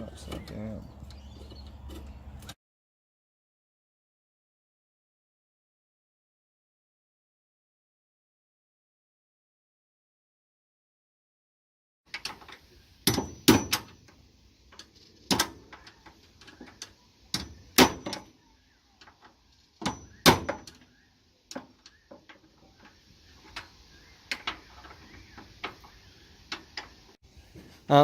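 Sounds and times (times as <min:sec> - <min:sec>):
sharp knocks and clunks: 0:12.2 - 0:14.1, 0:15.2 - 0:15.8, 0:16.6 - 0:18.3, 0:19.8 - 0:20.9.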